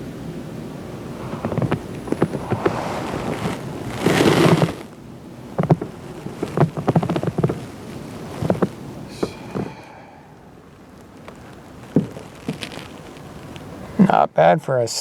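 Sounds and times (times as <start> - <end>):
loud rustling: 0.0 - 14.2
light clicks and knocks: 5.5 - 9.8.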